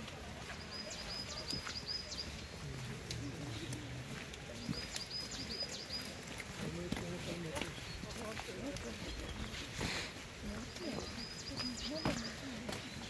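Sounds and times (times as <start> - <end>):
faint voices murmuring: 0.0 - 13.0
small songbird singing: 0.5 - 2.7, 4.5 - 6.5, 7.2 - 13.0.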